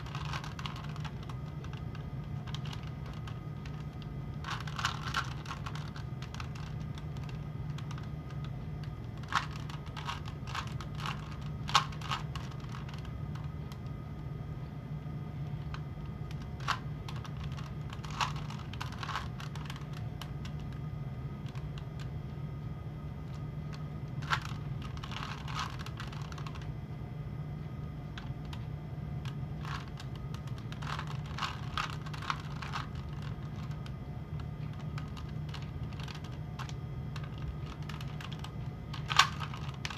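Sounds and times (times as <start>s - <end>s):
puzzle cube clicking: 0.0s - 13.8s, 15.6s - 20.8s, 24.2s - 26.7s, 29.2s - 33.9s, 34.7s - 39.9s
steady low hum: 0.0s - 39.9s.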